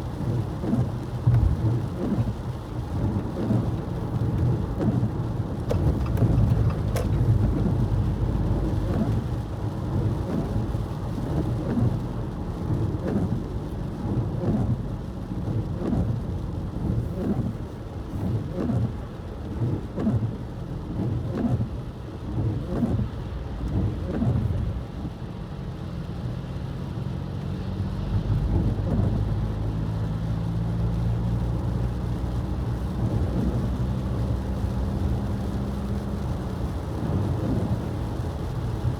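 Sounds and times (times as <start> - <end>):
low vehicle hum: 0.0 - 38.9
rain and sleet hitting car: 0.0 - 38.9
road and tyre rumble: 0.0 - 38.9.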